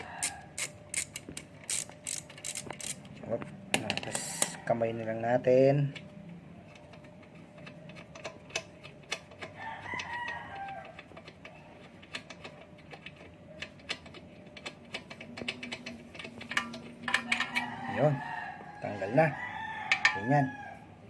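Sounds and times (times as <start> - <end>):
rooster crowing: 0.0 - 0.7, 9.6 - 11.0, 17.2 - 21.0
metallic clicks of hand tools: 6.8 - 17.6.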